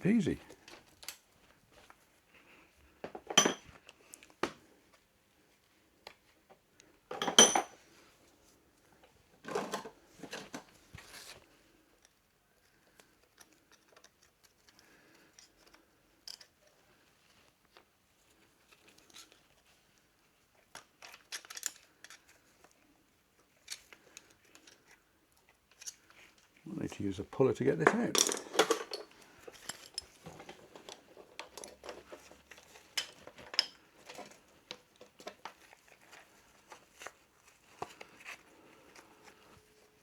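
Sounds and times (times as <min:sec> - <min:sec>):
metal tools clinking and clattering: 0:27.8 - 0:32.4.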